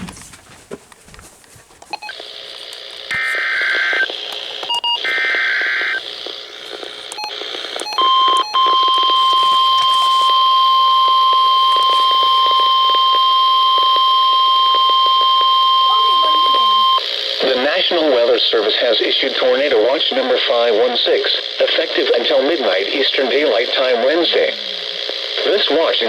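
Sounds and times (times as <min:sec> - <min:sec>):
radio static hiss: 0:01.7 - 0:26.0
steady warning alarm tone: 0:01.9 - 0:20.0.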